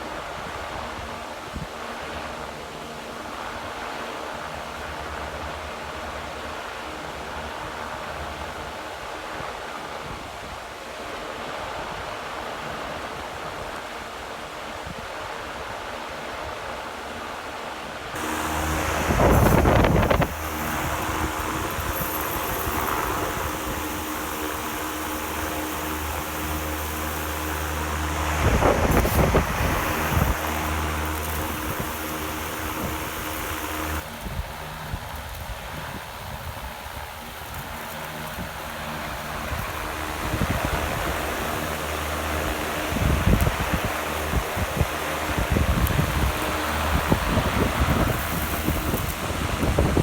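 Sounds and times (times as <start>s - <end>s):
steady rushing air: 18.2s - 34.0s
low motor hum: 18.2s - 35.3s, 36.9s - 50.0s
grain poured through airstream: 18.2s - 50.0s.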